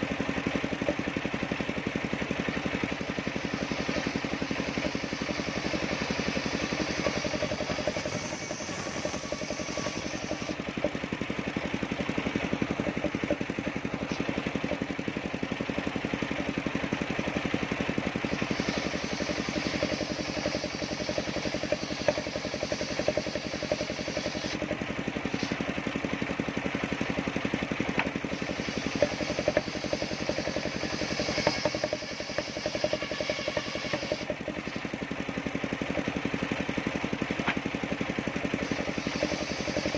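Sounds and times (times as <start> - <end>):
sawmill engine running: 0.0 - 39.9
saw blade hissing through timber: 3.0 - 10.7, 18.2 - 25.8, 28.2 - 34.8, 38.5 - 39.9.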